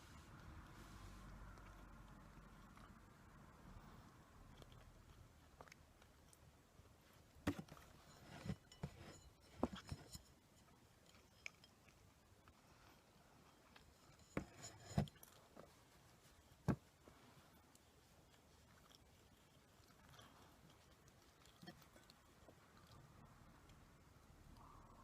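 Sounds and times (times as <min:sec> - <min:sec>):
handling clicks and soft knocks: 0:04.6 - 0:11.9.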